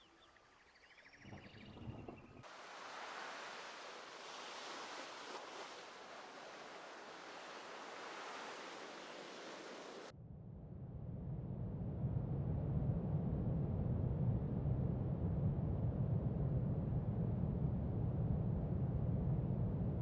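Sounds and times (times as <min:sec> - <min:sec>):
low rumble: 0:10.2 - 0:20.0.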